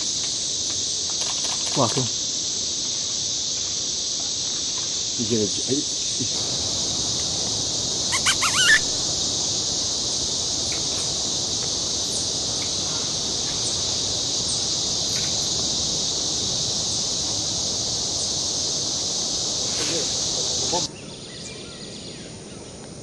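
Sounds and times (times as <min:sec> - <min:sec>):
high-pitched insect chorus: 0:00.0 - 0:23.0
loud burst of bird calls: 0:07.8 - 0:09.6
faint bird chirps: 0:08.1 - 0:09.0.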